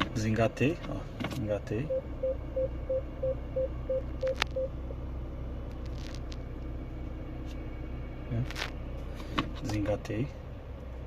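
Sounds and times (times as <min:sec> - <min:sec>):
idling engine hum: 0:00.0 - 0:11.0
parking sensor beeping: 0:01.8 - 0:04.8.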